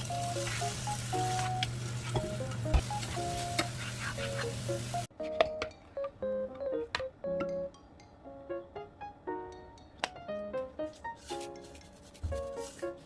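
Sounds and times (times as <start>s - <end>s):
food sizzling in a frying pan: 0.0s - 5.1s
utensil scraping a pan: 3.0s - 4.6s.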